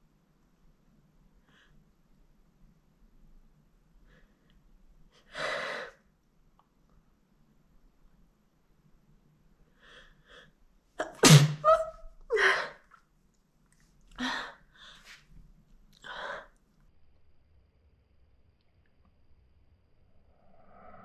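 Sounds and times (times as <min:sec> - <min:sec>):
person sneezing: 0:11.0 - 0:11.9.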